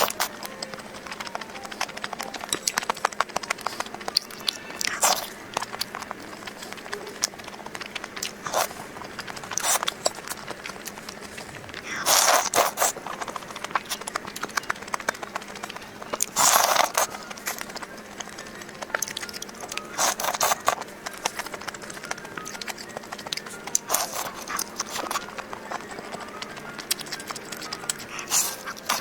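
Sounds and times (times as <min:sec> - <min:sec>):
chewing crispy food: 0:00.0 - 0:29.0.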